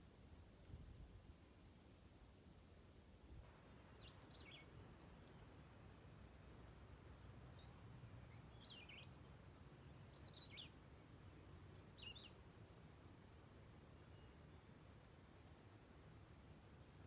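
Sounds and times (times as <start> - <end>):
songbird chirping: 3.5 - 17.0.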